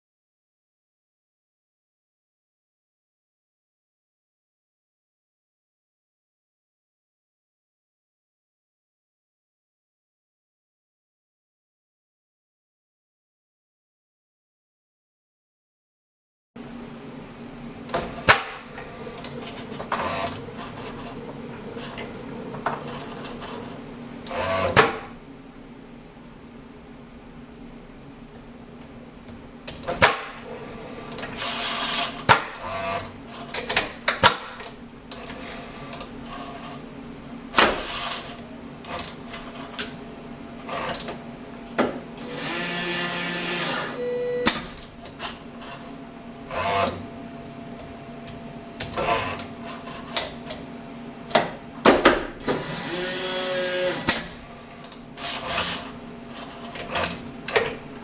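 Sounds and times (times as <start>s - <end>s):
machine hum: 16.6s - 58.0s.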